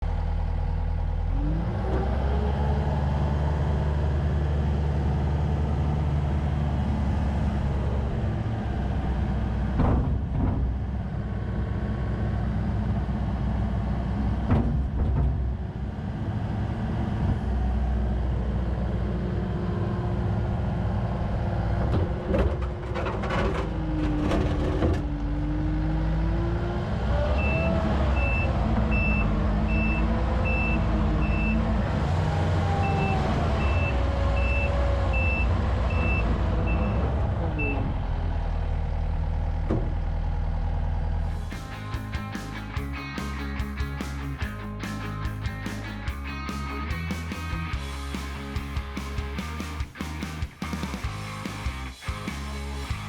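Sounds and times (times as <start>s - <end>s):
diesel engine running and revving: 0.0s - 53.0s
reversing alarm beeping: 27.4s - 31.6s, 32.8s - 37.0s.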